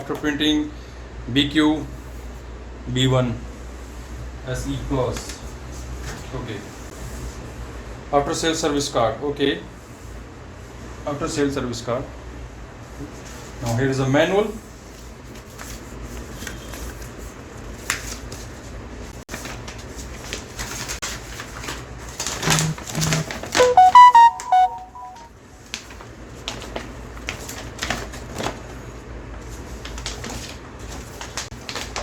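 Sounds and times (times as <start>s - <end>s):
paper rustling: 14.9s - 18.7s, 19.3s - 23.7s, 25.7s - 32.0s
electronic tune: 22.5s - 25.3s.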